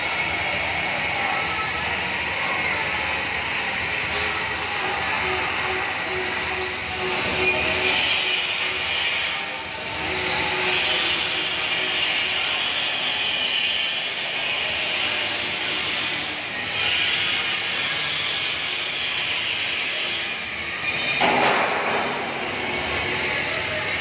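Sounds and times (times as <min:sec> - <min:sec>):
rushing hissing machine noise: 0:00.0 - 0:24.0.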